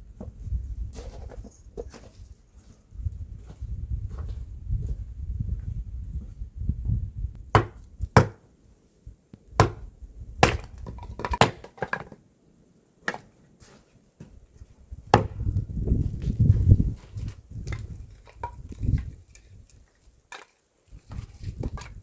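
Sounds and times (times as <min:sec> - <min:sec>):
axe chopping wood: 0:07.5 - 0:08.4, 0:09.6 - 0:12.2, 0:13.0 - 0:13.3, 0:15.1 - 0:15.5.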